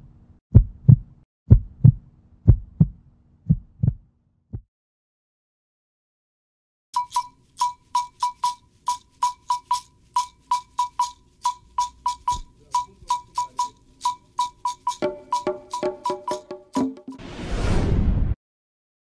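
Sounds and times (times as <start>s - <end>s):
sharp ringing clicks: 7.0s - 15.0s.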